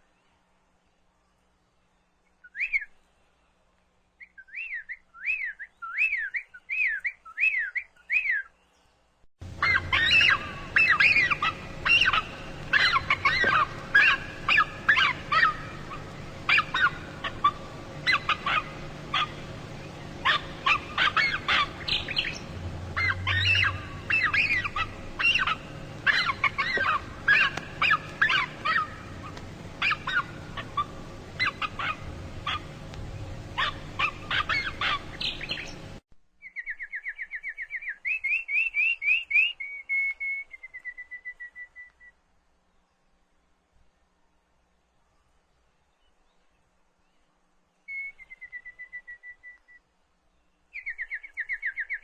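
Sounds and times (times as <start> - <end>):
flock of birds chirping: 2.1 - 39.6
bird whistling: 2.4 - 3.0, 4.2 - 8.5, 9.6 - 32.7, 33.5 - 35.8, 36.5 - 42.1, 47.9 - 49.8
low steady hum: 8.6 - 36.0.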